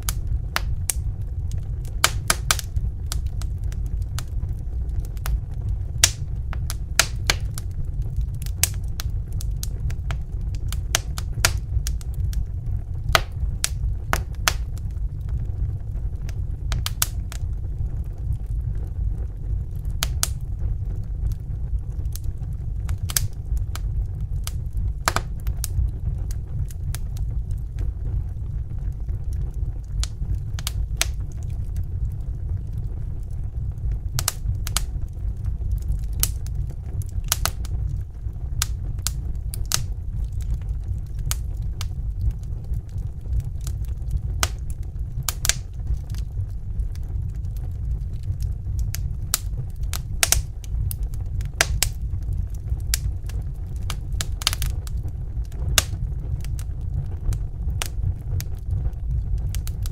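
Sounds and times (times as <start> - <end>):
fire pops and snaps: 0.0 - 59.9
low rumble of burning fire: 0.0 - 59.9.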